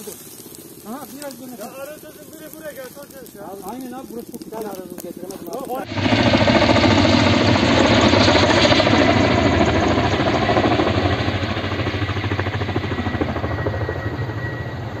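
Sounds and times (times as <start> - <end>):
engine running roughly: 5.8 - 13.5.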